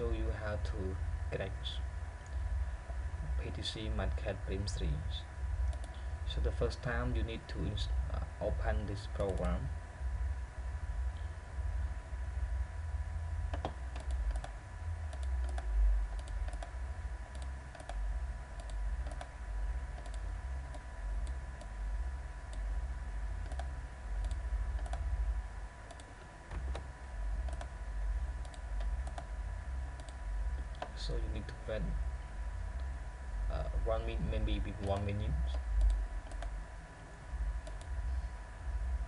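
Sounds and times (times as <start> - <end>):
steady low hum: 0.0 - 39.0
computer keyboard clicking: 13.5 - 14.5, 15.1 - 16.7, 17.3 - 18.0, 18.6 - 19.3, 20.0 - 21.7, 23.4 - 25.0, 28.4 - 29.3.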